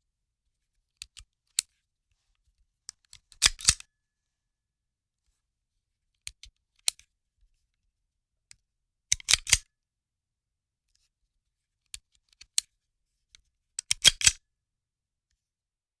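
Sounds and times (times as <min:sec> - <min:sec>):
handgun mechanism metal clicks: 0:03.1 - 0:03.8, 0:09.1 - 0:09.6, 0:13.8 - 0:14.4.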